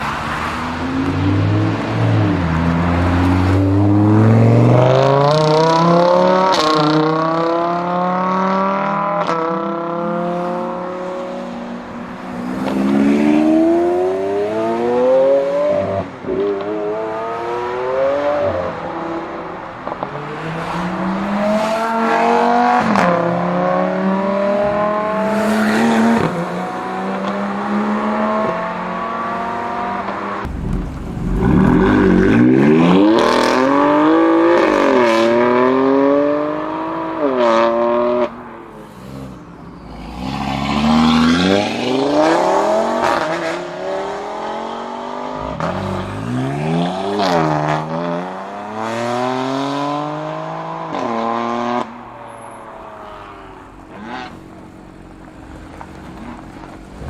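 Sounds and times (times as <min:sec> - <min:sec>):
sports car engine accelerating: 0:23.4 - 0:38.3.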